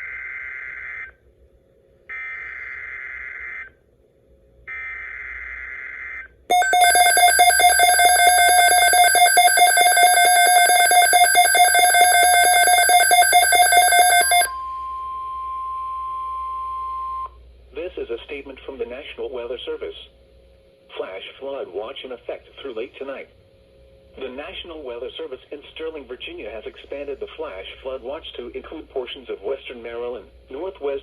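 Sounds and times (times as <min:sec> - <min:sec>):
rapidly pulsing alarm tone: 0:06.5 - 0:14.5
steady single-pitched attention tone: 0:06.5 - 0:14.5.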